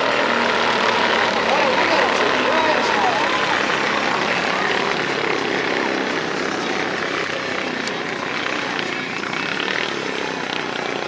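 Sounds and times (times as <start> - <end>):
race vehicle engines running: 0.0 - 11.0.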